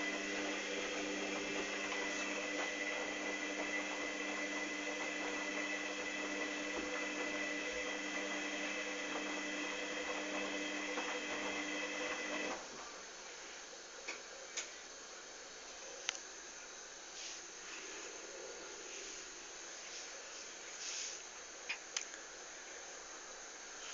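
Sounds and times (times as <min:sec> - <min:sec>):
washing machine humming: 0:00.0 - 0:13.2
faint hiss: 0:12.7 - 0:23.9.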